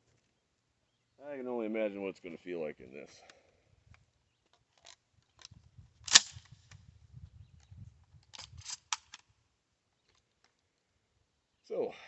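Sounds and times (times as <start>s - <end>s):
shotgun metallic clicks and clacks: 4.8s - 6.6s, 8.3s - 9.3s.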